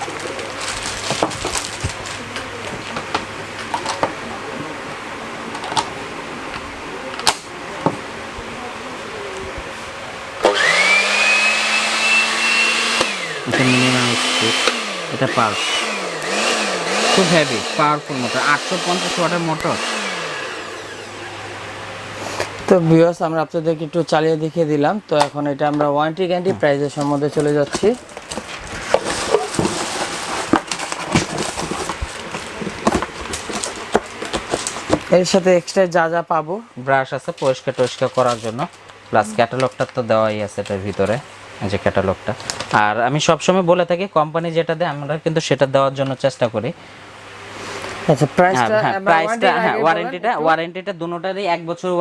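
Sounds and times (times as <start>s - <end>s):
hard objects knocking and clicking: 0.0s - 4.2s, 27.0s - 35.1s
steady background hiss: 0.0s - 52.0s
electric spice grinder whining: 10.4s - 22.7s, 27.4s - 35.1s.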